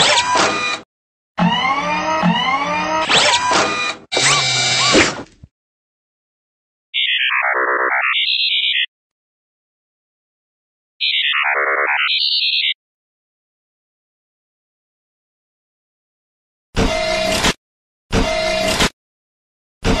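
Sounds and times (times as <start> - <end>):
electronic robot sound effect: 1.4 - 5.2, 7.0 - 8.9, 11.0 - 12.7
mechanical whirring effect: 1.4 - 5.3.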